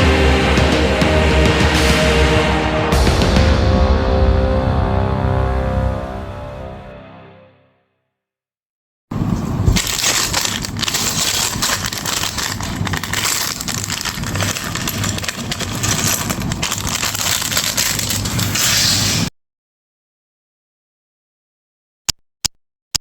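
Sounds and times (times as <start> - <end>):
plastic pieces rustling and clattering: 9.1 - 19.3.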